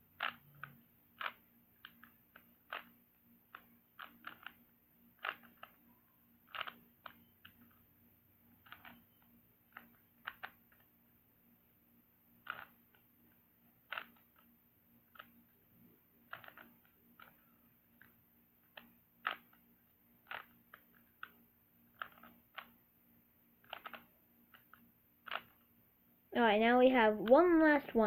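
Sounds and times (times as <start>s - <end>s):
plastic puzzle cube clicks: 0.2s - 5.8s, 6.4s - 7.8s, 8.6s - 10.9s, 12.4s - 13.0s, 13.8s - 14.5s, 15.1s - 15.4s, 16.2s - 22.8s, 23.6s - 25.6s.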